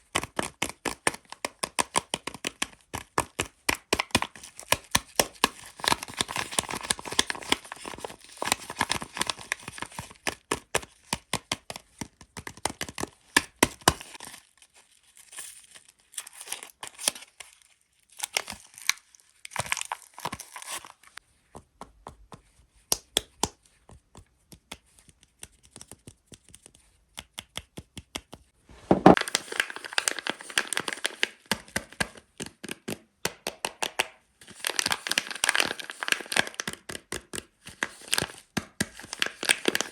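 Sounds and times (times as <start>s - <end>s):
wrappers crinkling and tearing: 13.4s - 21.2s, 29.0s - 32.0s, 34.4s - 39.9s.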